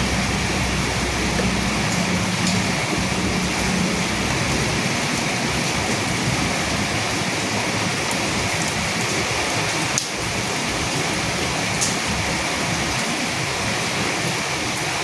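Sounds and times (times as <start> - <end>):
low thunder rumble: 0.0 - 12.9
heavy rain falling: 0.0 - 15.0.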